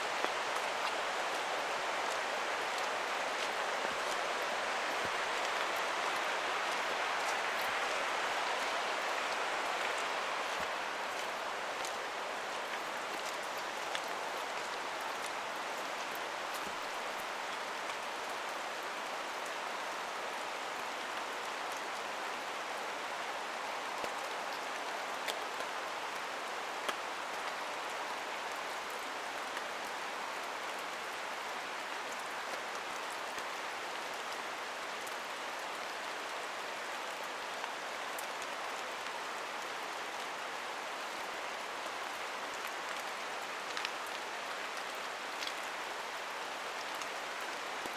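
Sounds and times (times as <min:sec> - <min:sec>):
rain hissing: 0:00.0 - 0:18.1.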